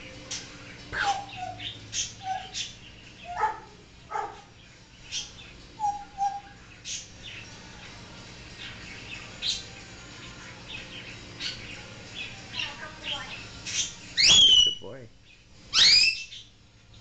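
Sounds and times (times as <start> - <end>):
parrot whistling and chirping: 0.3 - 4.4, 5.1 - 7.2, 13.6 - 14.9, 15.7 - 16.5.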